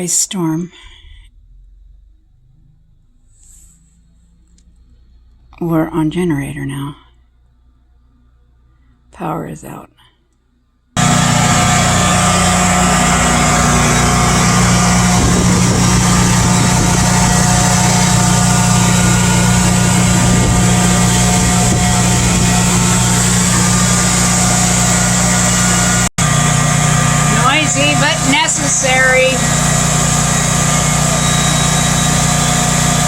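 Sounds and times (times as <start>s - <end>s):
portable generator engine running: 11.0s - 33.0s.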